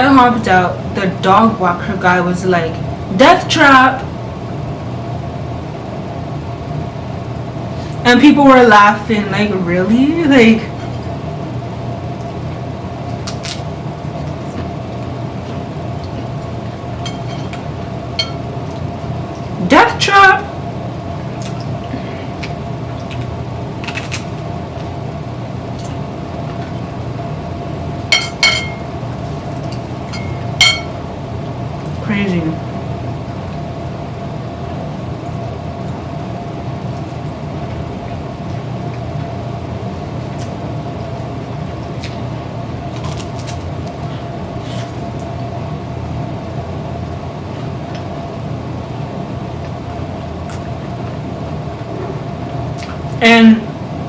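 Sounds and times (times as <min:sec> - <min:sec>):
low hum: 0:00.0 - 0:54.0
constant tone: 0:16.9 - 0:20.6.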